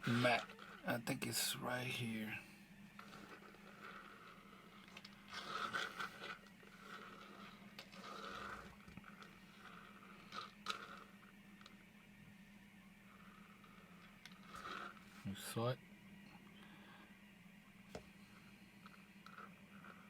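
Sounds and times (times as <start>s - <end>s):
toy car rolling on a mat: 0.0s - 0.8s, 3.0s - 11.8s, 13.1s - 15.5s, 17.9s - 20.0s
steady low hum: 0.0s - 20.0s.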